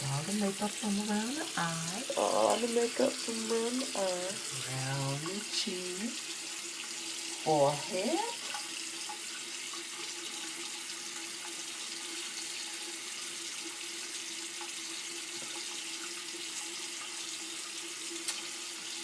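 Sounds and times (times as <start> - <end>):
tap running into sink: 14.6 - 16.1.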